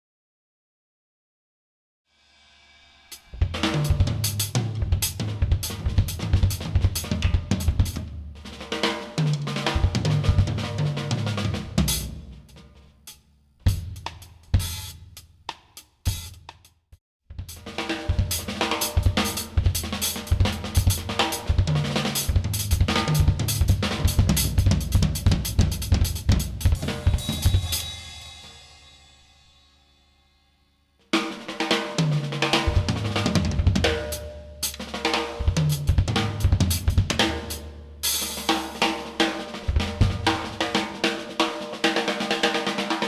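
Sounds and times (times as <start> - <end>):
cymbal crash: 2.1 - 3.5, 26.8 - 30.4
drum kit playing: 3.0 - 29.5, 31.2 - 43.0
cymbals ringing: 26.8 - 30.3.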